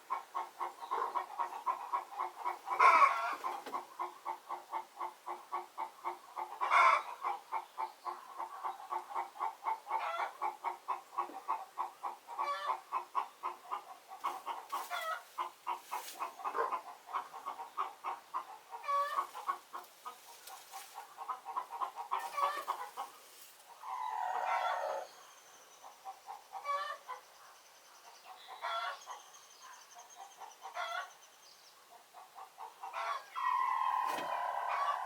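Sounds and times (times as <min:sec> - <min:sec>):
chickens clucking: 0:00.0 - 0:31.2, 0:31.9 - 0:35.0
chicken drawn-out call: 0:02.4 - 0:03.6, 0:23.8 - 0:25.2, 0:32.9 - 0:35.0.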